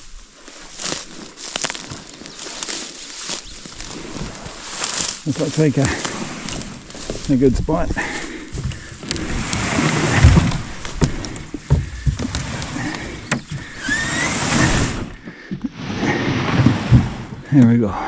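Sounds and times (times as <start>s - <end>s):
canoe hull scraping: 0.0s - 18.0s
knocks on canoe: 8.5s - 15.7s.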